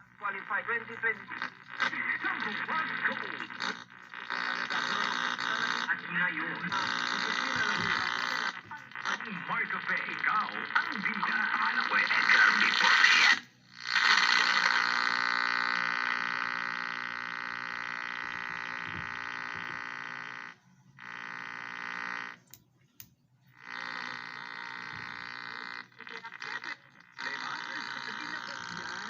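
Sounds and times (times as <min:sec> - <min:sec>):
radio static buzzing: 0:00.0 - 0:22.6, 0:23.4 - 0:29.0.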